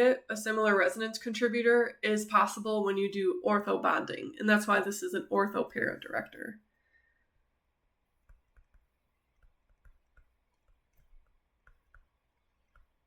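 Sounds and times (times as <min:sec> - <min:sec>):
faint irregular clicks: 0:08.2 - 0:13.0.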